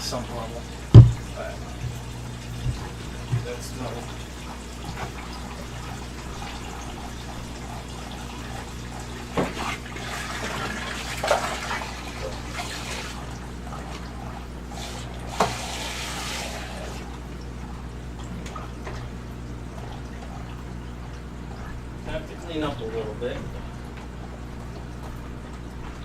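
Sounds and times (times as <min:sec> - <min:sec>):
steady low hum: 0:00.0 - 0:26.0
water running and splashing: 0:00.0 - 0:26.0
sharp knocks: 0:01.0 - 0:02.0.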